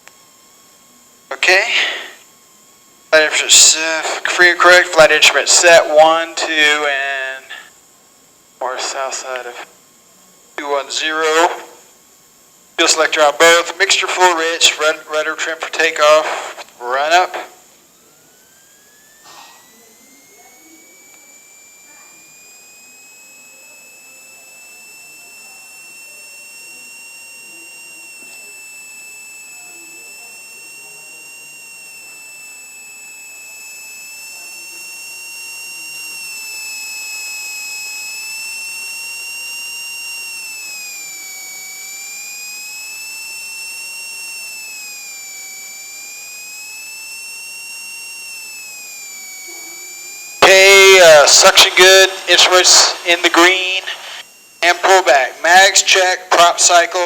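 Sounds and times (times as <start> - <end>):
aircraft piston engine whine: 0.0 - 57.0.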